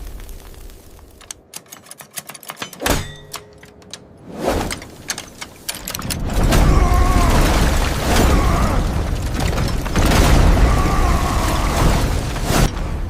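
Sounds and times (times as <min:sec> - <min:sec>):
sharp mechanical clicks: 0:01.1 - 0:06.4.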